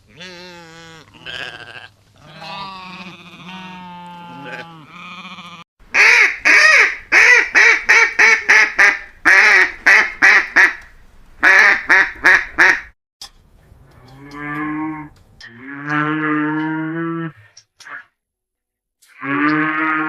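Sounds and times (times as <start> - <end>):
cow mooing: 0.1 - 5.6, 14.0 - 17.4, 19.2 - 20.0
duck quacking: 6.0 - 12.9.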